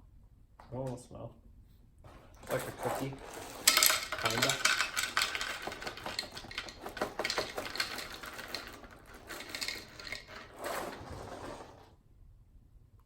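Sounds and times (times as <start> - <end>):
cereal clattering as poured: 2.6 - 11.1.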